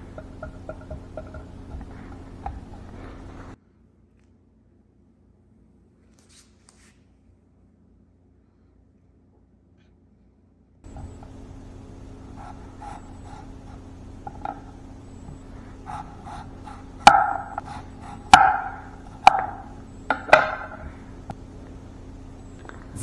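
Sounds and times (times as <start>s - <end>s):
objects knocking on wooden board: 0.0s - 3.6s, 12.1s - 21.0s
faint steady hum: 0.0s - 4.0s, 10.8s - 23.0s.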